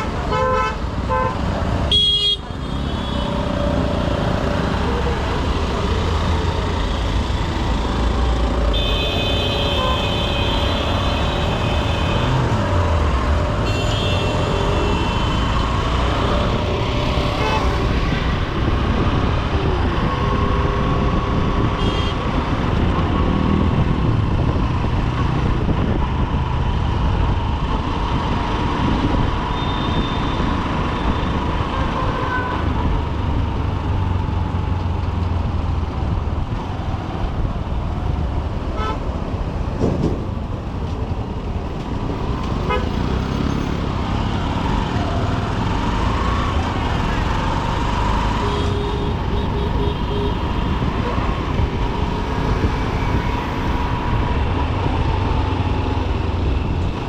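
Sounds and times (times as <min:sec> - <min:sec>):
vehicle horns honking: 0:00.0 - 0:03.4, 0:08.7 - 0:12.5, 0:13.6 - 0:15.5, 0:21.8 - 0:22.2, 0:42.6 - 0:43.1.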